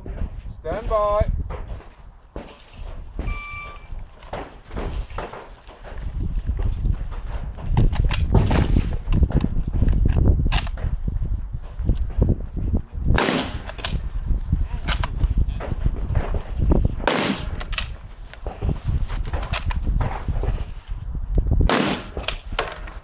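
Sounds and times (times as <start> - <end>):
steady low rumble: 0.0 - 22.6
rifle shots: 1.5 - 6.0, 7.8 - 9.4, 13.2 - 14.1, 14.8 - 18.7, 21.7 - 23.0
rifle bolt clicks and knocks: 7.7 - 10.9, 13.4 - 14.0, 14.8 - 15.4, 17.4 - 18.6, 19.2 - 20.2, 21.9 - 23.0.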